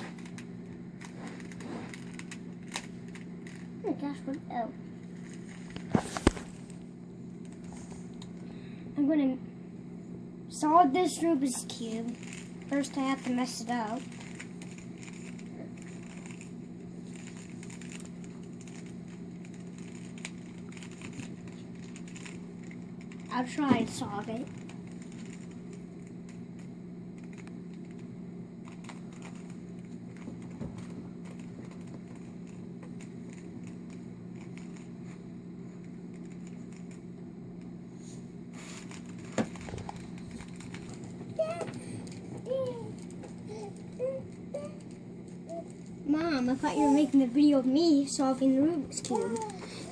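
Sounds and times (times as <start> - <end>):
steady low hum: 0.0 - 49.9
rubik's cube plastic clicks: 12.2 - 12.4, 17.2 - 18.9.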